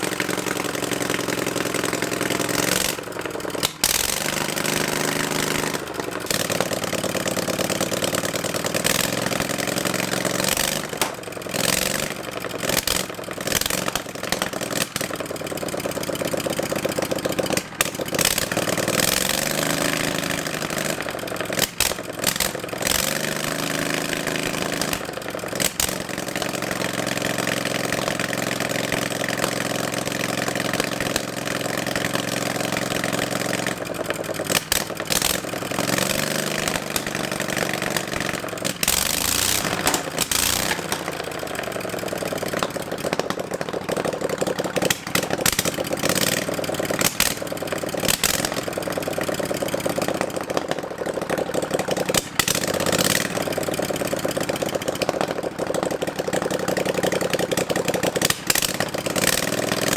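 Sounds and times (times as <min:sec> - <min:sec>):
motor running at changing speed: 0:34.6 - 0:41.4.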